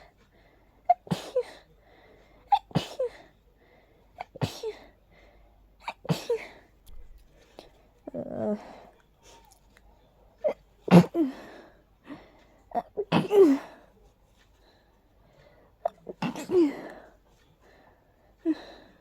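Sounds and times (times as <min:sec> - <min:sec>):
person sneezing: 0:15.9 - 0:17.0.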